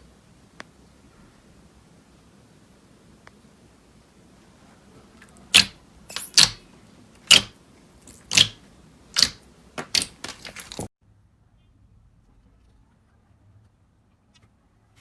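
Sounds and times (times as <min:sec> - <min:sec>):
slime crackling pops: 0:05.6 - 0:06.6, 0:07.3 - 0:07.5, 0:08.1 - 0:08.6, 0:09.2 - 0:10.9.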